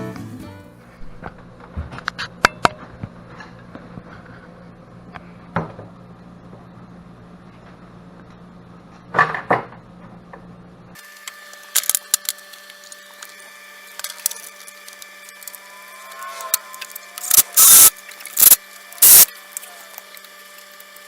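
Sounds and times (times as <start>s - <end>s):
steady hum: 13.1s - 21.0s.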